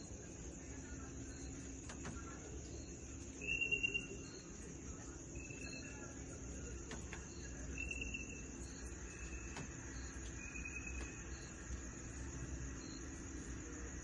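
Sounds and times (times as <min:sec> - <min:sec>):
crickets trilling: 0:00.0 - 0:14.0
low-pitched insect chirps: 0:00.0 - 0:14.0.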